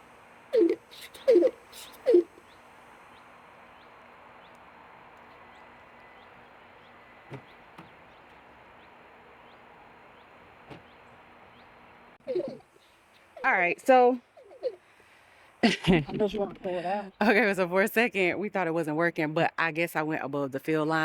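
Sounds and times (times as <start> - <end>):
low cooing calls: 0.0 - 15.1
outdoor background hiss: 0.0 - 21.0
faint high chirps: 0.5 - 13.5.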